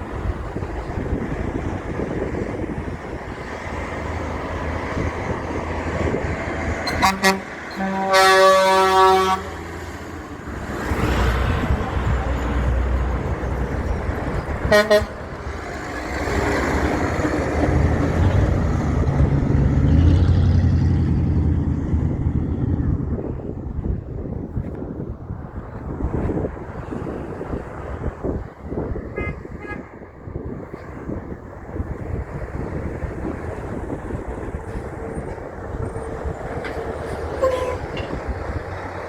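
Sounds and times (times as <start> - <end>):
truck engines and tyres: 0.0 - 39.0
truck horn blasts: 6.8 - 9.8, 14.6 - 15.5, 29.1 - 30.0, 37.2 - 38.3.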